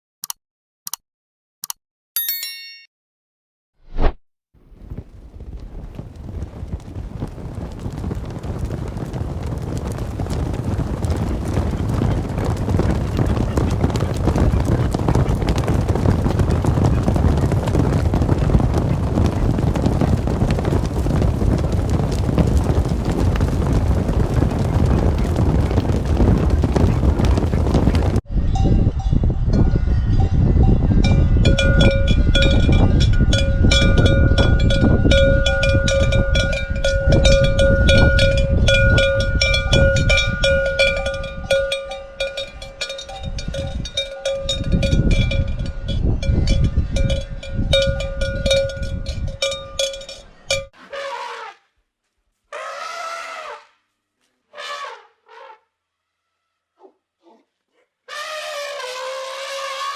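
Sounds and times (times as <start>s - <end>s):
rough wind noise: 3.9s - 50.8s
cowbells clanking: 31.1s - 50.8s
animal call: 52.5s - 53.7s.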